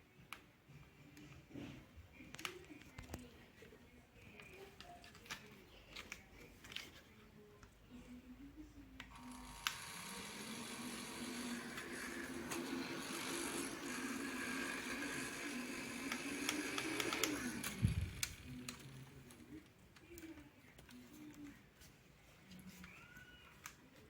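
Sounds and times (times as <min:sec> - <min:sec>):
electric fan motor hum: 0:09.1 - 0:19.5
fan clicks: 0:16.0 - 0:19.0.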